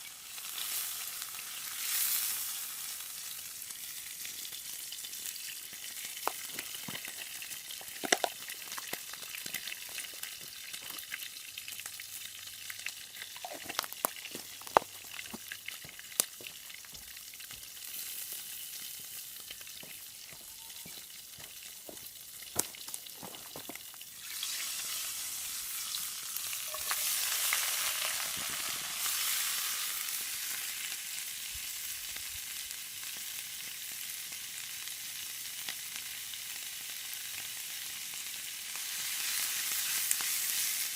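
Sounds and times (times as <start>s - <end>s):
noodles sizzling in skillet: 0.0s - 40.9s.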